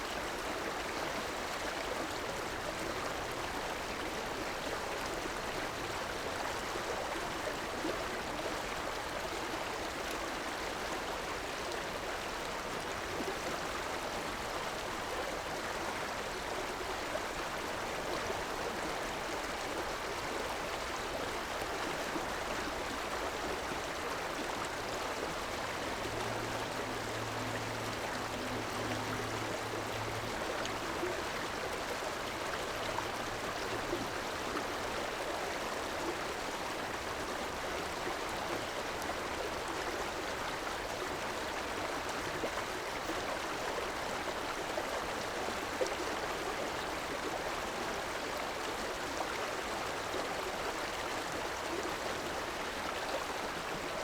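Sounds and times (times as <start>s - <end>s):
river water rushing over rocks: 22.3s - 51.5s.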